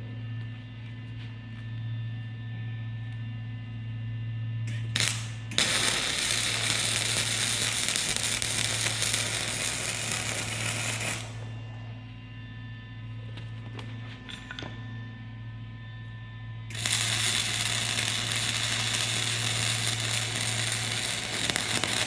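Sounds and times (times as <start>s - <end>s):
electrical hum: 0.0s - 22.0s
arc welding crackling hiss: 4.7s - 11.6s, 16.7s - 22.0s.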